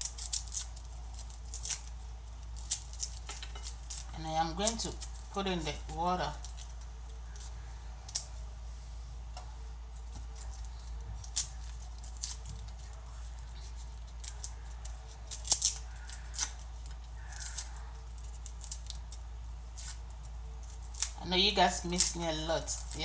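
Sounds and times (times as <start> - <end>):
steady low hum: 0.0 - 23.0
garlic being cut: 10.0 - 23.0.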